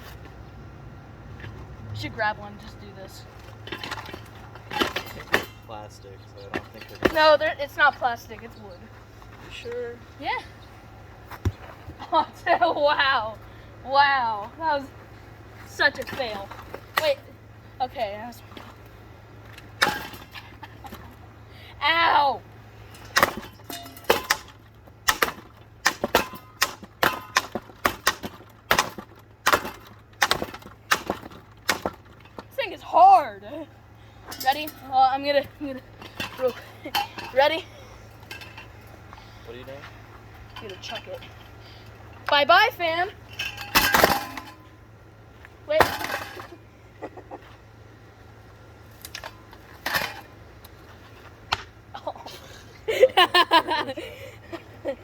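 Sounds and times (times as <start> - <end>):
hammer striking metal fan: 22.9 - 32.0.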